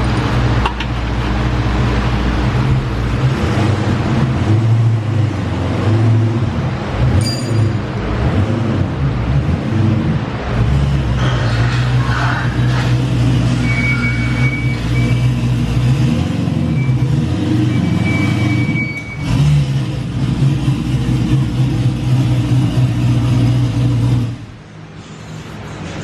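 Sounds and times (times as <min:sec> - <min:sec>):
car engine running: 0:00.0 - 0:26.0
high brake squeal: 0:11.2 - 0:15.5, 0:16.6 - 0:19.6.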